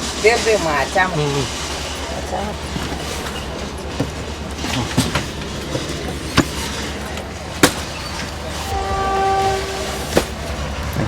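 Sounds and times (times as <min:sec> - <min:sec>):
train carriage rumbling: 0:00.0 - 0:11.0
sharp metallic clanks: 0:03.3 - 0:08.8.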